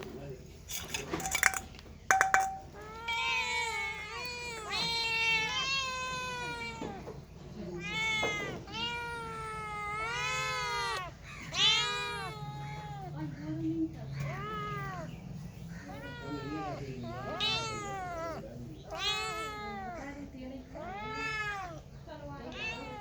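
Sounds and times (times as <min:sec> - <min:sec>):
cat meowing: 0:02.1 - 0:07.1, 0:07.8 - 0:13.1, 0:14.2 - 0:15.1, 0:15.8 - 0:20.1, 0:20.8 - 0:21.8, 0:22.4 - 0:23.0.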